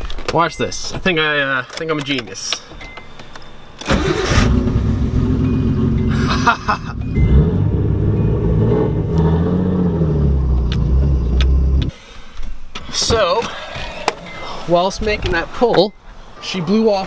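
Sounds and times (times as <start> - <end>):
turbocharged car engine revving: 3.9 - 11.9.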